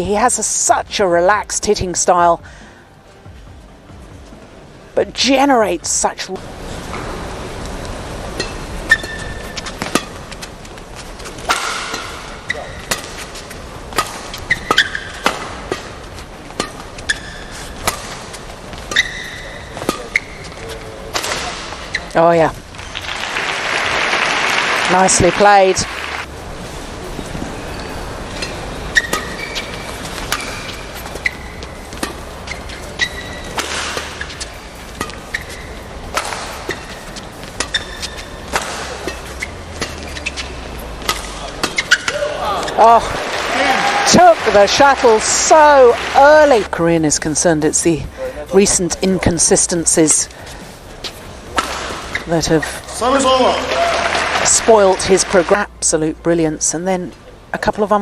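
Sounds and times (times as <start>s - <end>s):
hall ambience: 6.3s - 57.4s
shoes squeaking on court floor: 6.6s - 55.7s
rackets hitting shuttlecock: 8.3s - 10.5s, 11.2s - 22.2s, 27.8s - 46.7s, 51.4s - 55.6s.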